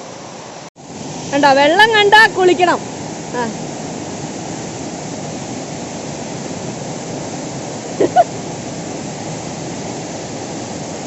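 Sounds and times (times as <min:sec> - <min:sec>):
waterfall rushing: 0:00.0 - 0:11.0
person crying out: 0:08.0 - 0:08.3.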